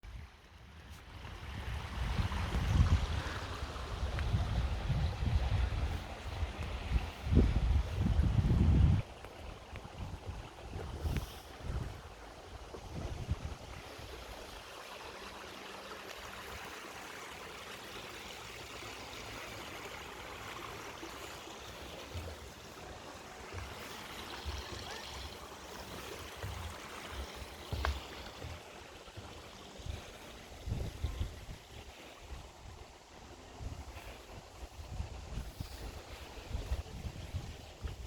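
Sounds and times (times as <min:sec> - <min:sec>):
wind buffeting microphone: 0:00.1 - 0:14.4, 0:27.7 - 0:38.0
mountain stream running: 0:00.1 - 0:38.0.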